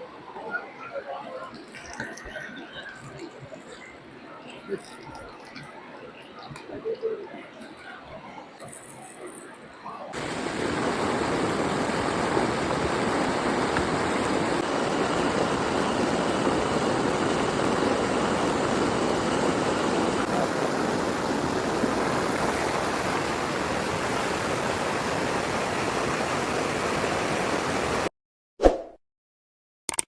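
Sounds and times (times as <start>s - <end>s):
hot oil sizzling: 10.2s - 28.1s.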